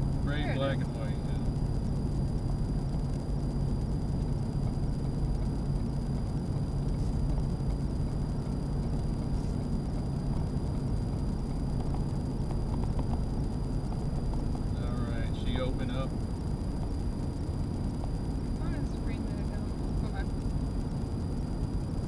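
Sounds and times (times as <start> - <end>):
road and tyre noise: 0.0 - 22.0
truck engine hum: 0.0 - 22.0.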